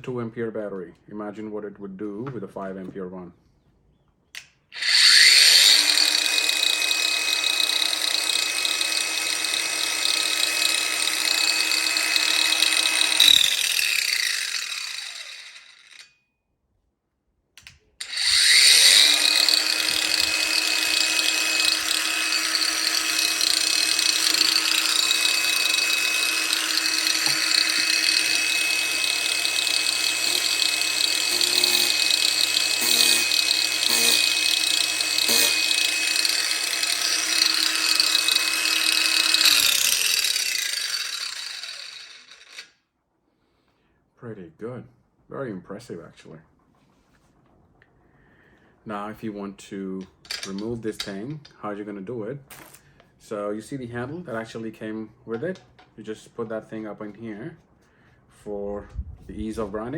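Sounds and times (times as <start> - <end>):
angle grinder whining: 4.8 - 16.2, 18.0 - 42.7.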